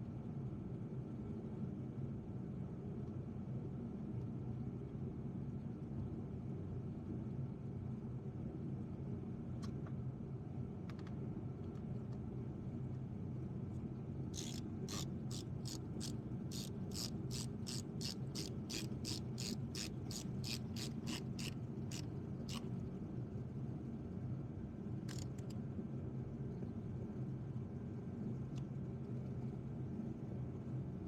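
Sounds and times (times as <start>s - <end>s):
steady low hum: 13.6s - 31.0s
ratchet wrench clicking: 14.4s - 22.7s, 25.1s - 25.5s.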